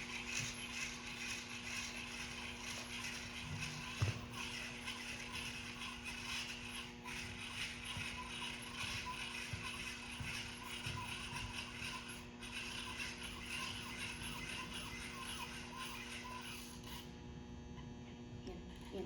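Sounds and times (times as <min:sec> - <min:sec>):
hand-crank winder clicking rattle: 0:00.0 - 0:14.6.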